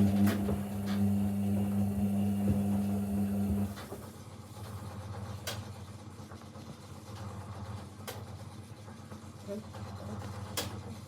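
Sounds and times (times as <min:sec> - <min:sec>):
washing machine motor humming: 0:00.0 - 0:04.0.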